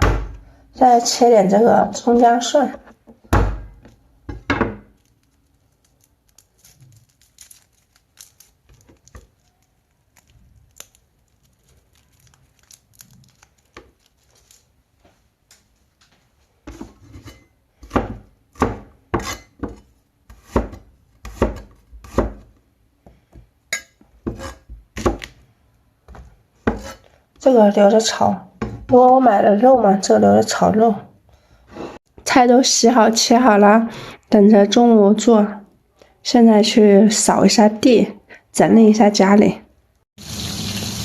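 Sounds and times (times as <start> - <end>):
handling rustles: 4.9 - 16.8
knife chopping on cutting board: 16.7 - 22.5, 24.2 - 25.3, 26.1 - 27.0.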